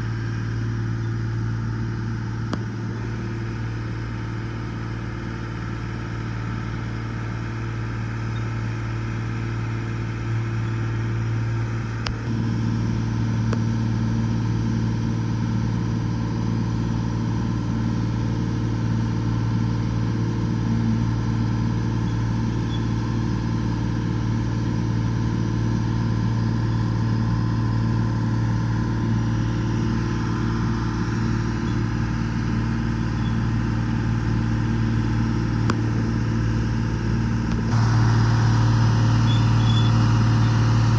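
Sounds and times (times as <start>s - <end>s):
excavator diesel engine running: 20.3s - 40.9s.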